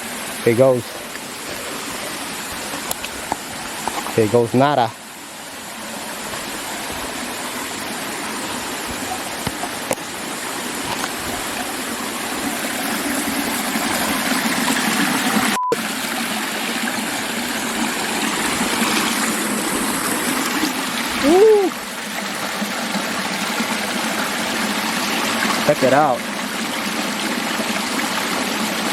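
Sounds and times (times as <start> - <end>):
brook water rushing: 0.0 - 28.9.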